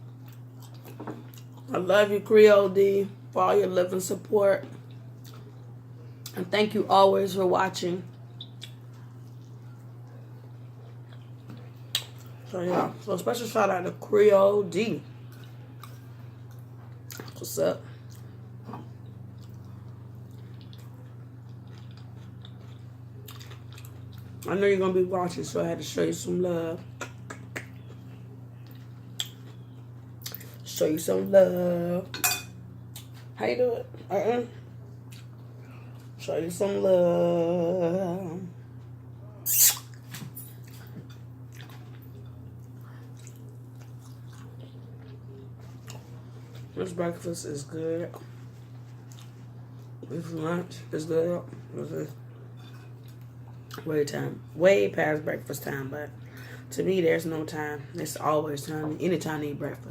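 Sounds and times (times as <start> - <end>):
steady low hum: 0.0 - 59.9
person chewing food: 0.1 - 1.7, 4.8 - 6.4, 8.1 - 12.4, 15.2 - 17.4, 18.0 - 24.5, 39.5 - 46.7, 48.2 - 50.1.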